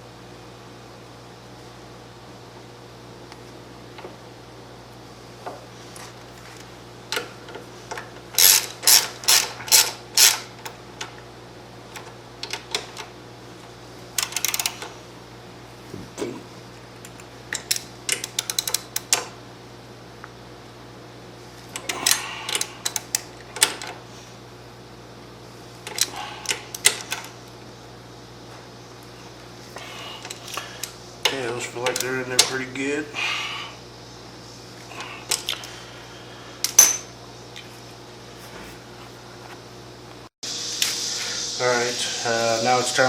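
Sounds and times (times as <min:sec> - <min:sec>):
ratchet wrench clicking: 0:08.4 - 0:10.4, 0:14.2 - 0:14.8.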